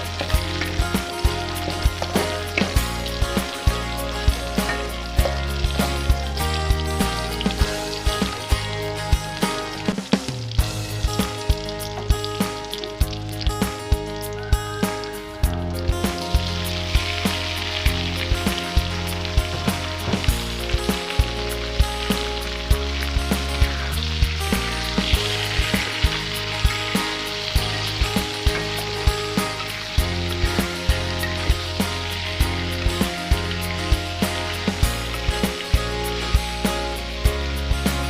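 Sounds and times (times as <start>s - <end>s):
background music with steady beat: 0.0s - 38.0s
stir-fry sizzling in hot oil: 0.0s - 38.0s.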